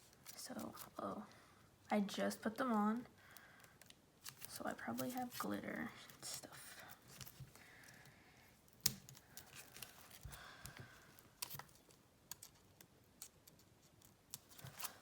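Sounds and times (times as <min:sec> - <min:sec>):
hands handling packaging clicks: 0:07.1 - 0:15.0.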